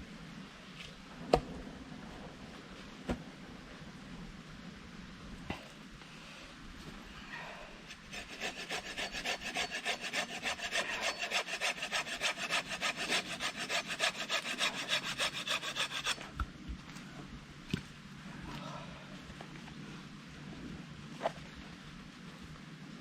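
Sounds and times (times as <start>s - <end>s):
hand saw cutting wood: 7.9s - 16.2s.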